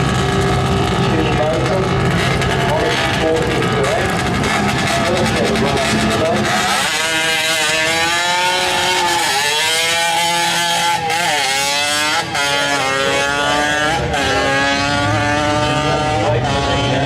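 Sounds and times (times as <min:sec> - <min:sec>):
small motorcycle engine revving: 0:00.0 - 0:17.0.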